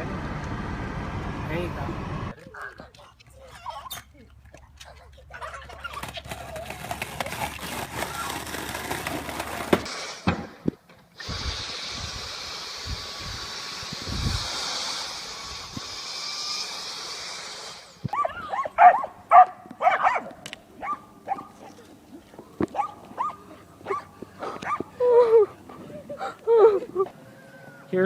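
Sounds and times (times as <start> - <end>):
steady hissing noise: 9.9 - 18.1
dog barking: 18.1 - 21.8, 22.7 - 24.9.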